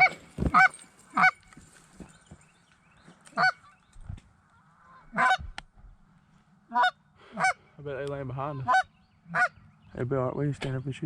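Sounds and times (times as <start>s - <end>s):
goose honking: 0.0s - 1.5s, 3.3s - 3.8s, 4.8s - 5.5s, 6.7s - 7.6s, 8.5s - 9.6s.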